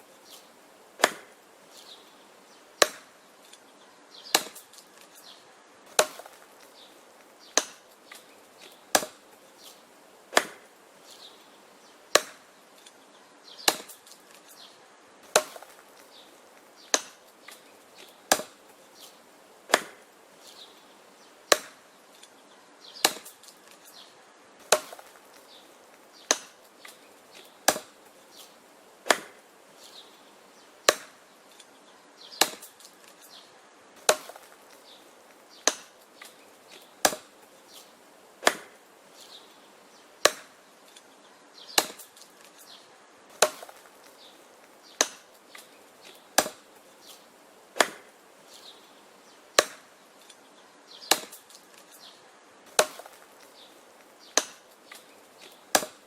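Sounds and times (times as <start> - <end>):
axe chopping wood: 1.0 - 1.4, 2.8 - 3.2, 4.3 - 5.1, 5.9 - 6.7, 7.4 - 9.2, 10.3 - 10.7, 12.1 - 12.5, 13.6 - 14.5, 15.2 - 20.1, 21.5 - 21.9, 23.0 - 24.0, 24.6 - 29.4, 30.8 - 31.2, 32.3 - 33.3, 34.0 - 35.0, 35.6 - 37.8, 38.4 - 38.8, 40.2 - 41.1, 41.7 - 42.6, 43.3 - 44.2, 44.9 - 47.2, 47.8 - 48.1, 49.6 - 50.0, 51.0 - 51.9, 52.7 - 53.5, 54.2 - 56.0.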